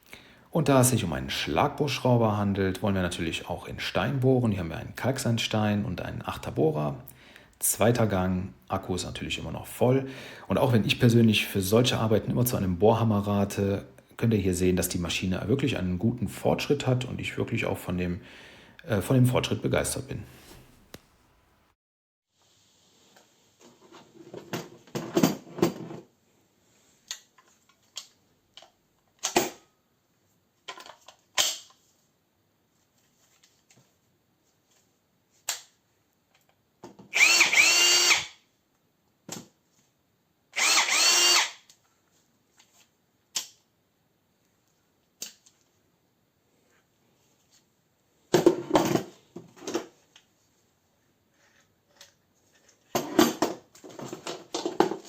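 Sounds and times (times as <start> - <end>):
hammer drill drilling into brick: 37.1 - 38.4, 40.6 - 41.7.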